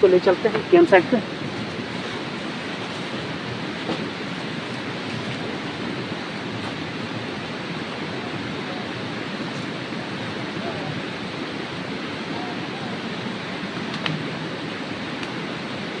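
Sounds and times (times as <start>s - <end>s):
steady rushing noise: 0.0s - 16.0s.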